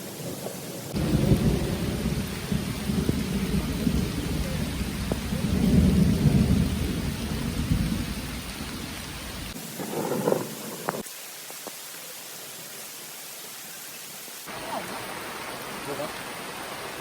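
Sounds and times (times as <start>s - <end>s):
steady rain: 0.0s - 17.0s
rolling thunder: 0.2s - 11.0s.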